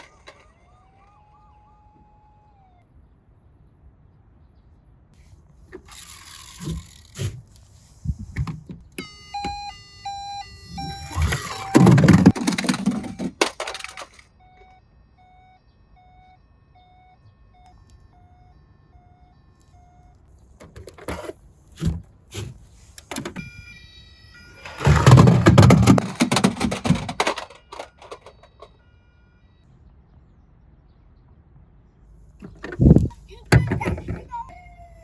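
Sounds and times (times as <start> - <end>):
toy siren beeps: 0.0 - 2.8, 9.0 - 20.3, 23.1 - 29.6, 32.7 - 35.0
toy cars rattling down cardboard: 5.8 - 7.8, 10.7 - 14.3, 24.6 - 28.8.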